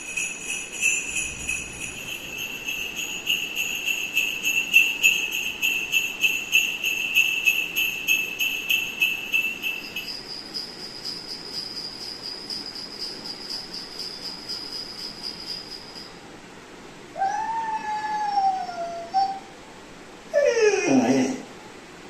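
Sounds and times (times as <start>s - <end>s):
high pulsing jingling tone: 0.0s - 16.2s
puppy whining howl: 17.1s - 19.6s, 20.3s - 21.5s.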